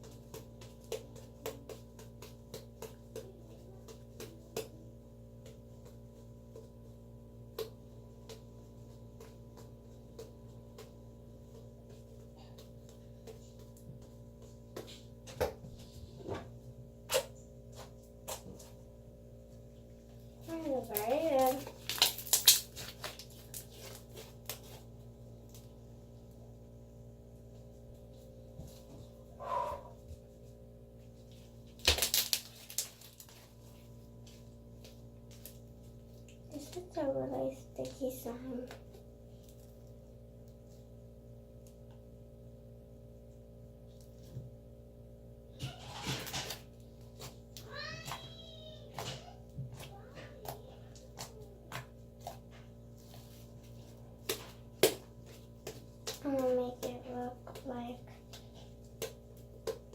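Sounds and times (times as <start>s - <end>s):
steady electrical hum: 0.0s - 59.9s
slime being squished: 31.8s - 33.5s.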